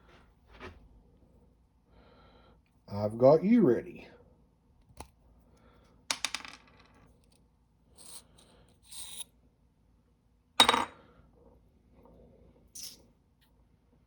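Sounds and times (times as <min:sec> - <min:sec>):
soft rustling: 0:00.0 - 0:00.9.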